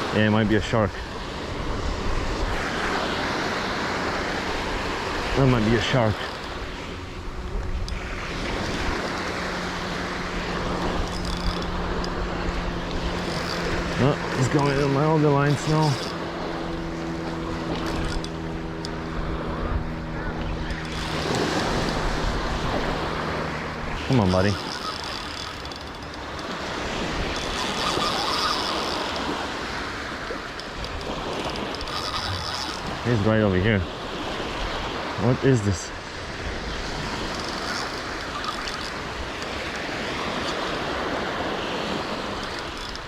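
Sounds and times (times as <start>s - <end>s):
wind buffeting microphone: 0.0s - 35.2s
surf washing on beach: 0.0s - 43.0s
steady low hum: 0.7s - 34.9s.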